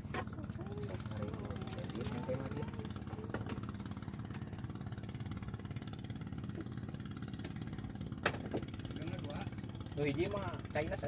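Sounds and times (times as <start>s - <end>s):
small engine idling: 0.0s - 11.0s.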